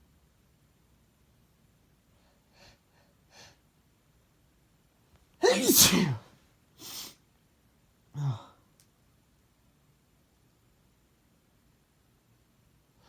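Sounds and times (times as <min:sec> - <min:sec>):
sharp breath: 0:05.4 - 0:06.2
short low voiced sound: 0:05.4 - 0:06.2
man sneezing: 0:05.4 - 0:07.1.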